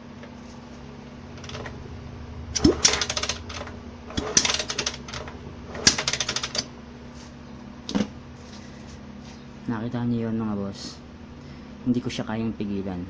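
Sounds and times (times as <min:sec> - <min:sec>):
rapid sputtering clicks: 0:02.5 - 0:06.7.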